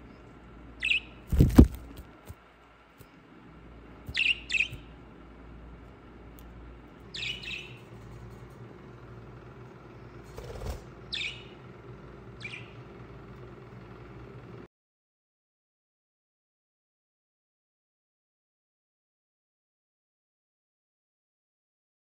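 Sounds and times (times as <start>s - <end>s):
birds chirping: 0.0s - 1.7s, 4.0s - 5.1s, 7.0s - 8.2s, 9.8s - 13.1s.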